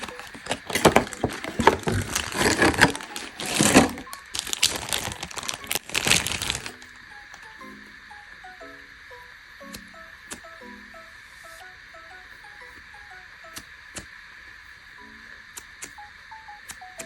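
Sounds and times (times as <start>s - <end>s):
plastic wrapping crinkling: 0.0s - 7.4s.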